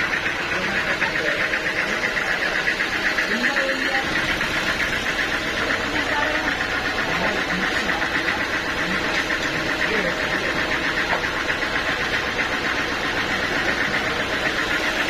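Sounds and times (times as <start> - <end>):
faint voices: 0.0 - 11.9
sawmill machinery pulsing drone: 0.0 - 15.0.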